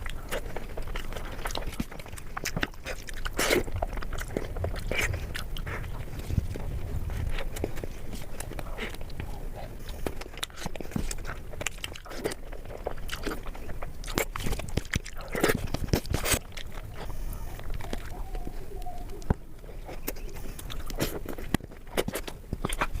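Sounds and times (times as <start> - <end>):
person chewing food: 0.0 - 23.0
mouth clicks and smacks: 7.2 - 23.0.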